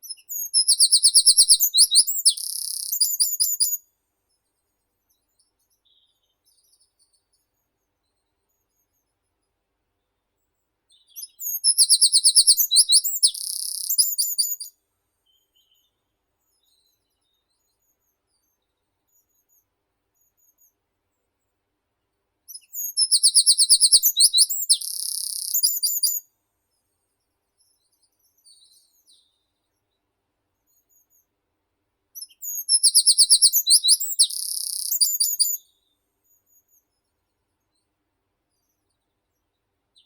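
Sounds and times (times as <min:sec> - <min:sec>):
songbird singing: 0:00.0 - 0:03.9, 0:10.9 - 0:19.6, 0:22.5 - 0:26.3, 0:32.2 - 0:37.1.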